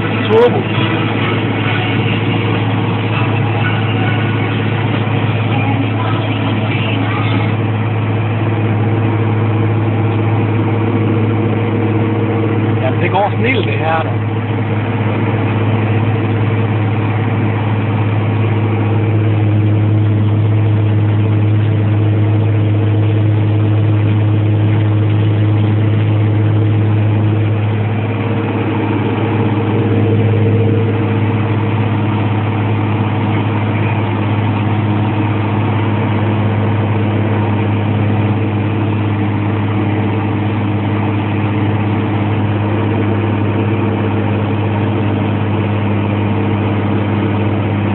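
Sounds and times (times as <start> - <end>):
tractor diesel engine running: 0.0 - 47.9.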